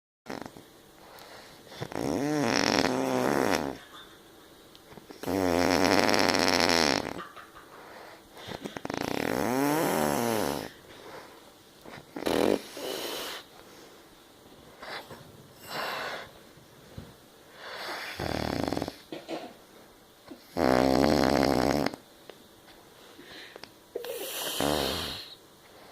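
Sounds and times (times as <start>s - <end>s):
person snoring: 1.8s - 3.8s, 5.2s - 7.2s, 8.5s - 10.7s, 12.1s - 13.5s, 17.7s - 19.0s, 20.4s - 22.0s, 24.0s - 25.4s.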